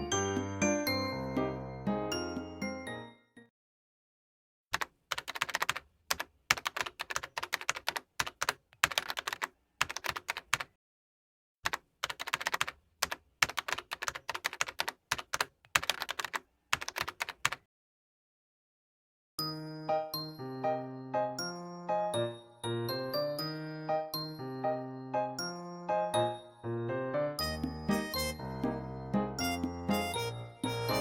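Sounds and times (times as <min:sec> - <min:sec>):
keyboard typing: 0:04.7 - 0:10.8, 0:11.6 - 0:17.7.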